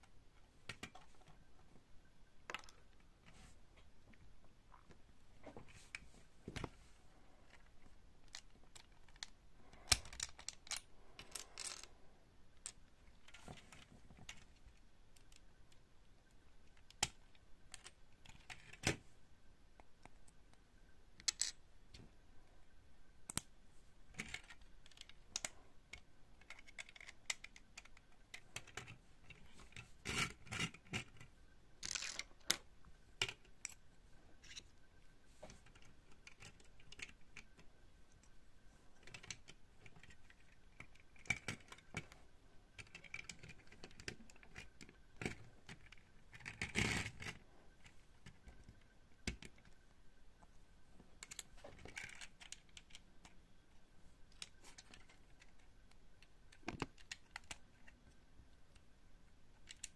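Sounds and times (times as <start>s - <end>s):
plastic bricks clicking and clattering: 7.5s - 11.9s, 21.2s - 21.6s, 24.1s - 33.8s, 59.5s - 59.9s.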